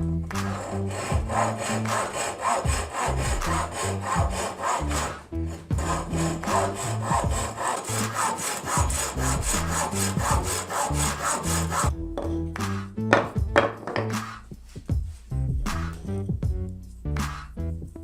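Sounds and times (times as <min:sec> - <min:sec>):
background music: 0:00.0 - 0:18.0
hand saw cutting wood: 0:00.3 - 0:11.9.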